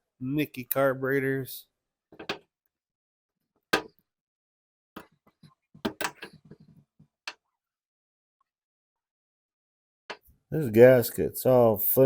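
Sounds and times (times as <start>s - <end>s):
clicks of small parts and tools: 5.0s - 6.7s.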